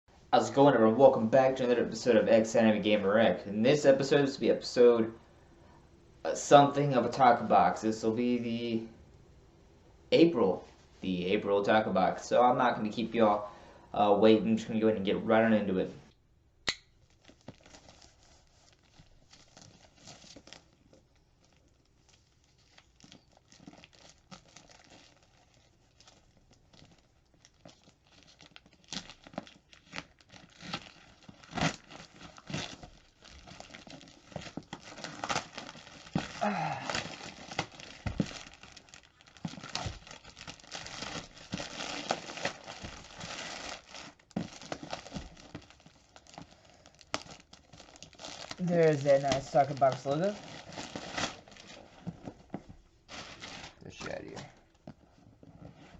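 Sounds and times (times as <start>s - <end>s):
packaging rustling: 17.0s - 55.9s.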